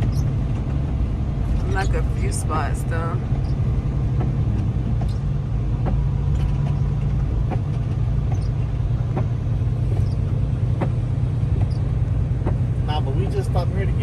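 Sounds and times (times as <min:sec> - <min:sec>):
diesel engine and road rumble: 0:00.0 - 0:14.0.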